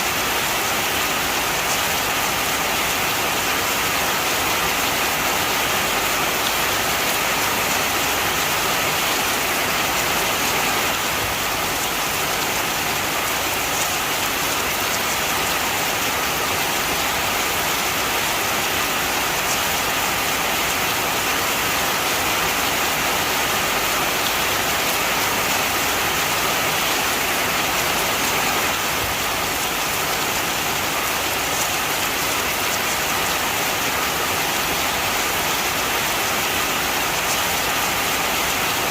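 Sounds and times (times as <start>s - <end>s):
heavy rain: 0.0s - 38.9s.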